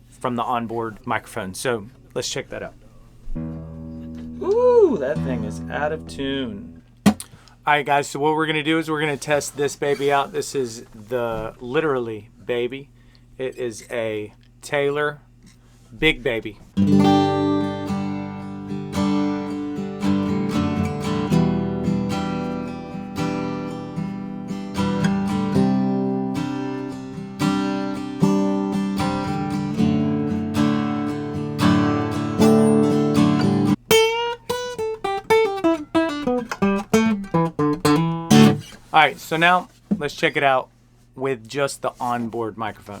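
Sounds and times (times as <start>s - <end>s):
acoustic guitar strummed in chords: 3.4s - 7.4s, 16.8s - 38.9s.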